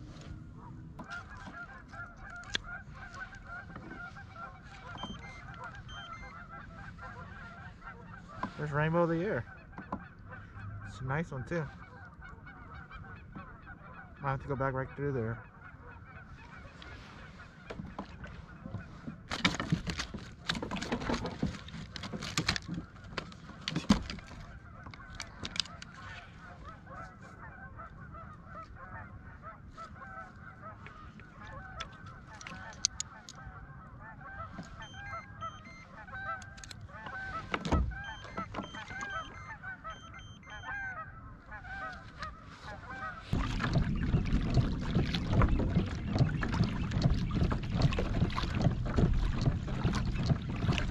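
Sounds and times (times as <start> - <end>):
boat noise: 0.0 - 50.9
geese honking: 0.1 - 50.9
wind rumble: 42.1 - 50.9
scattered knocks: 43.3 - 50.9.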